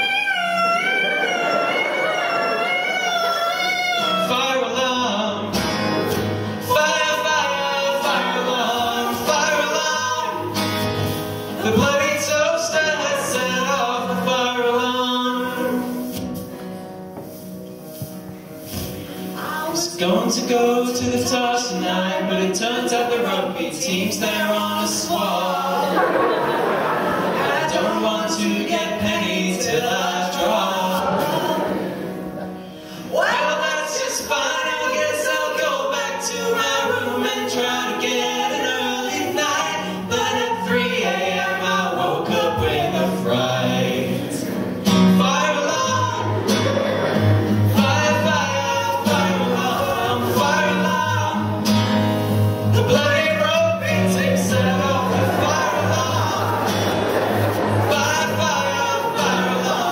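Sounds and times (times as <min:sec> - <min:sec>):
duet singing: 0:00.0 - 0:16.6, 0:18.6 - 0:59.9.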